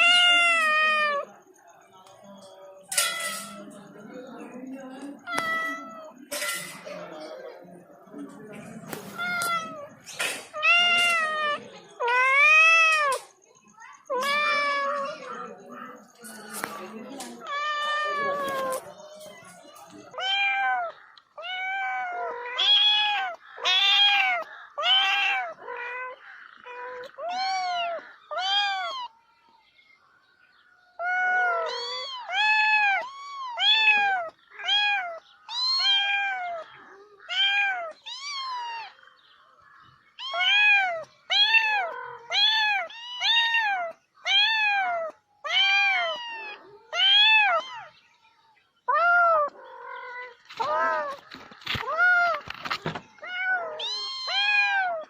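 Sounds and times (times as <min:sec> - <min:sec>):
cat meowing: 0:00.0 - 0:01.3, 0:05.2 - 0:06.2, 0:09.0 - 0:13.3, 0:14.1 - 0:15.4, 0:17.4 - 0:29.1, 0:31.0 - 0:39.0, 0:40.2 - 0:47.9, 0:48.9 - 0:55.0.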